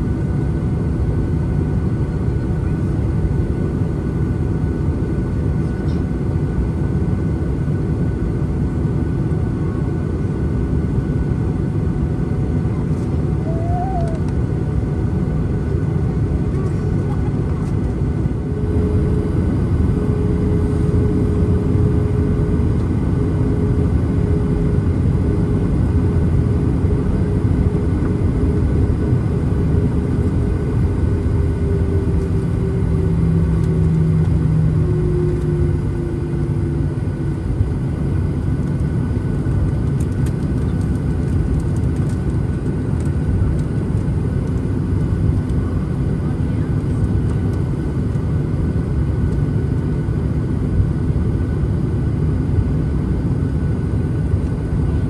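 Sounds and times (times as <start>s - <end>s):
jet engine low rumble: 0.0s - 55.0s
faint engine tone: 11.8s - 38.5s.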